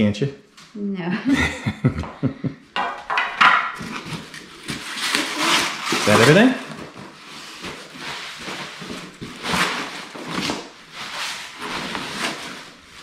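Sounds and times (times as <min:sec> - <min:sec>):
packaging rustling and scraping: 0:03.4 - 0:13.0.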